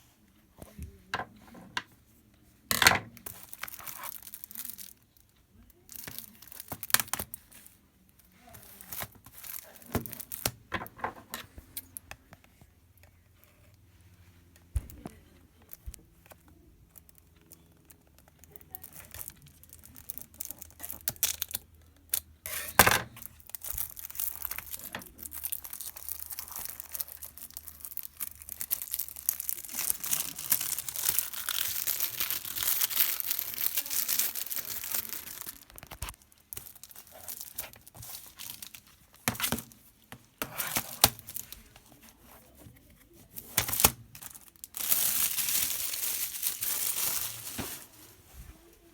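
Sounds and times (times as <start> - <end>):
plastic wrap tearing and crinkling: 3.1 - 5.2, 5.8 - 7.7, 8.5 - 11.3, 16.9 - 48.2.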